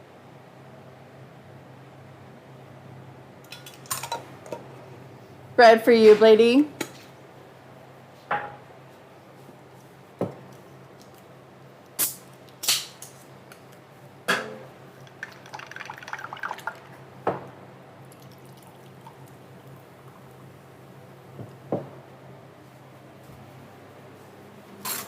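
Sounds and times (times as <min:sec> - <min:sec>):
crackling dripping liquid: 0:14.9 - 0:17.0, 0:18.0 - 0:20.5
things knocking on a counter: 0:21.4 - 0:22.0.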